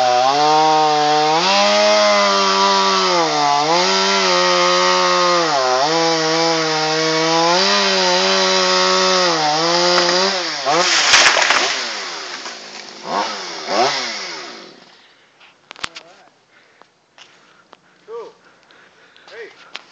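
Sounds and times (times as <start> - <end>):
chainsaw cutting wood: 0.0 - 15.0.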